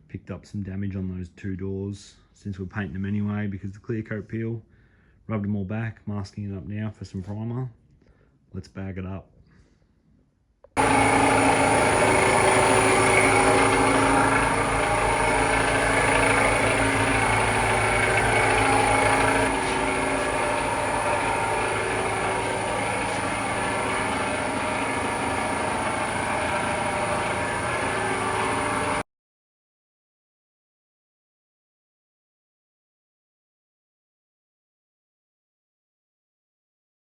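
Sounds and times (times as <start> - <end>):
motor-driven machine humming: 10.8 - 29.0.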